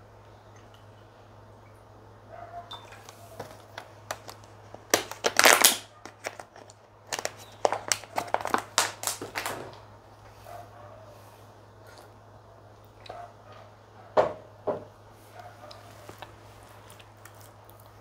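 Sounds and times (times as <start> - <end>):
close-up eating crunches: 15.6 - 18.0.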